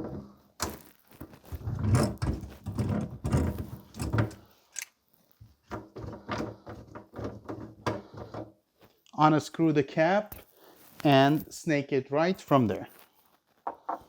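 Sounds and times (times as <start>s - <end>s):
knocks and clunks under sink: 1.8s - 4.4s.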